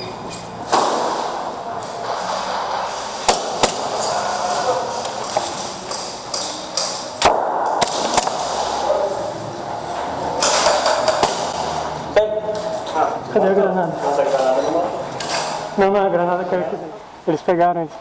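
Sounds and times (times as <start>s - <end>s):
pistol shots: 7.2s - 8.6s.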